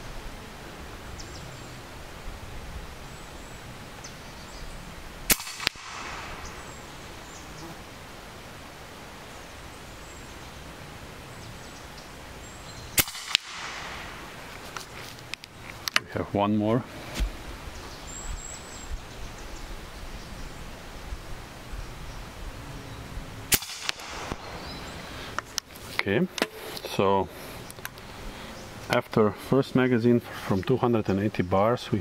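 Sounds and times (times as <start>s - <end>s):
air rifle shots cracking: 5.3s - 7.0s, 13.0s - 14.6s, 23.5s - 24.9s.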